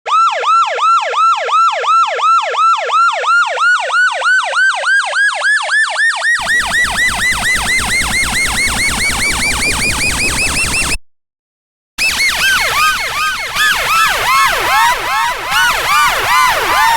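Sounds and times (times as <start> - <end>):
police siren yelping: 0.1 - 11.0, 12.0 - 16.9.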